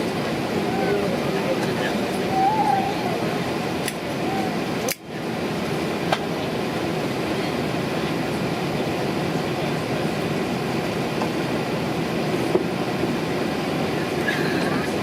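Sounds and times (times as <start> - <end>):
airliner cabin rumble and hiss: 0.0 - 15.0.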